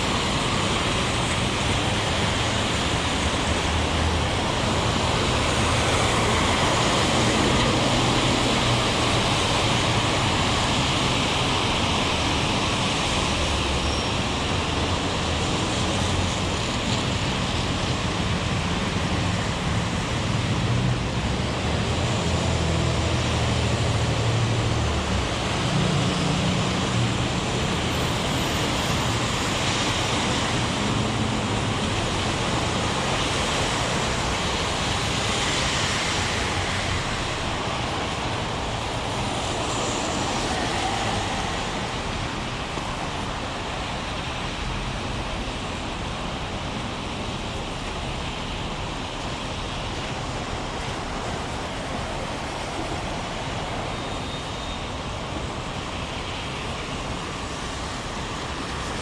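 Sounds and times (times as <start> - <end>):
heavy rain falling: 0.0 - 59.0
road traffic rumbling past: 18.4 - 46.4.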